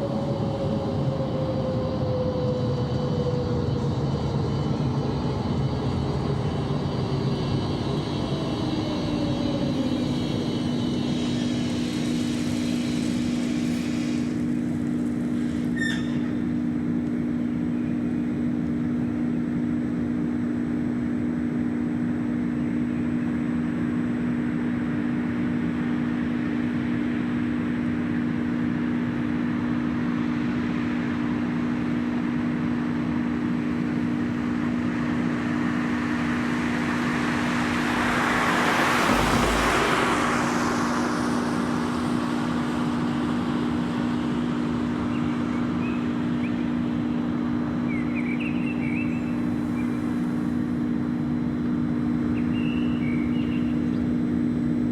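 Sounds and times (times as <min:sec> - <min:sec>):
rising rush of noise: 0:00.0 - 0:17.0, 0:28.4 - 0:53.7
background rumble: 0:02.2 - 0:17.1
low two-note hum: 0:29.5 - 0:54.1.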